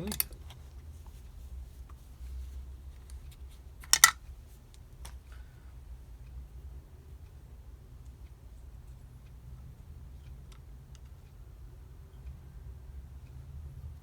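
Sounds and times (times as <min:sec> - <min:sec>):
small metal parts clicking: 0:00.0 - 0:00.6, 0:03.8 - 0:04.2.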